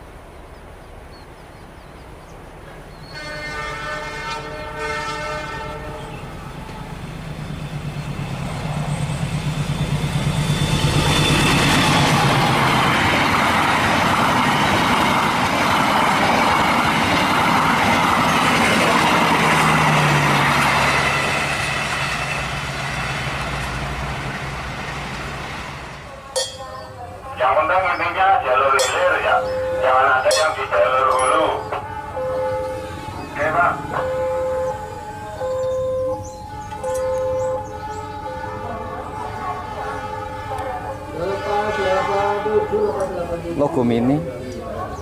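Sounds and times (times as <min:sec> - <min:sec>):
locomotive horn blast: 0:03.1 - 0:07.0, 0:36.9 - 0:43.1
train wheels and wagons rattling: 0:04.1 - 0:45.0.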